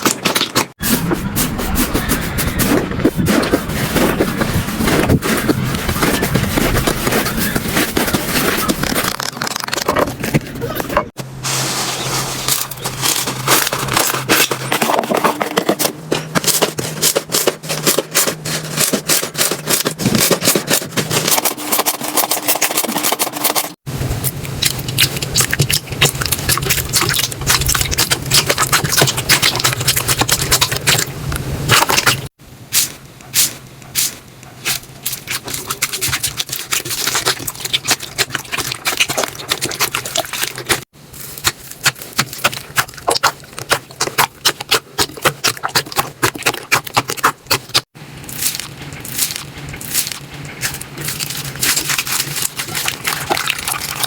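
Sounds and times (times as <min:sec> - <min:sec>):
slime crackling by hand: 0:31.7 - 0:54.0.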